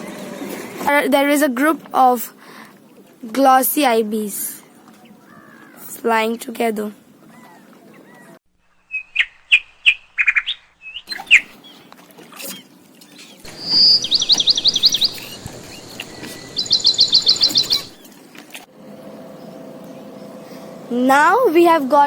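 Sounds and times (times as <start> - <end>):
small birds chirping and trilling: 4.6 - 6.0, 7.1 - 18.2.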